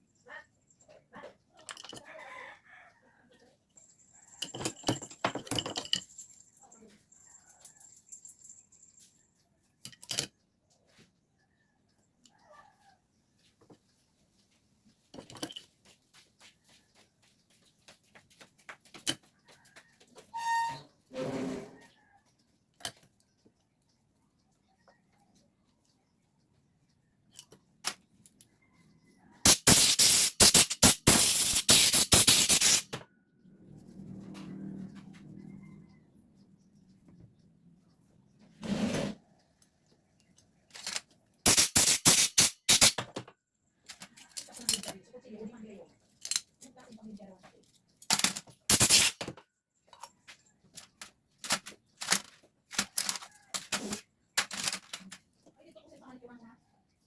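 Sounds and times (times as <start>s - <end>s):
small metal parts clinking: 1.6s - 2.1s, 3.8s - 9.1s, 29.5s - 32.9s, 40.7s - 43.1s, 43.9s - 45.0s, 46.1s - 46.7s, 47.7s - 49.3s, 50.8s - 55.2s
loud hissing bursts: 29.5s - 32.8s, 41.5s - 42.9s, 48.7s - 49.2s.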